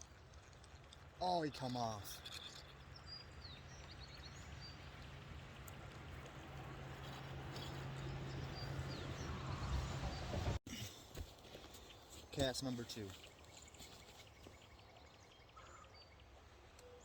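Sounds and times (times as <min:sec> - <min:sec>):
bird chirps: 0:07.0 - 0:10.5.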